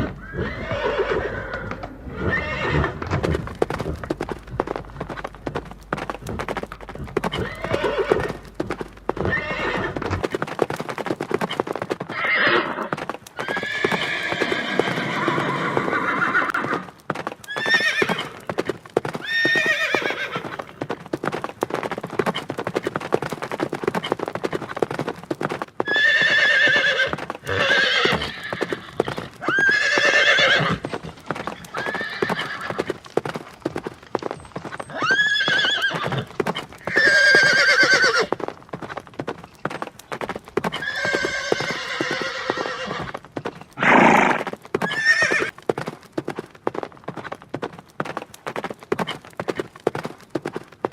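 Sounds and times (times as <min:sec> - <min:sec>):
horses neighing: 0:00.0 - 0:10.7, 0:11.4 - 0:21.1, 0:25.8 - 0:38.5, 0:40.2 - 0:45.6
horse hooves clopping: 0:00.0 - 0:50.9.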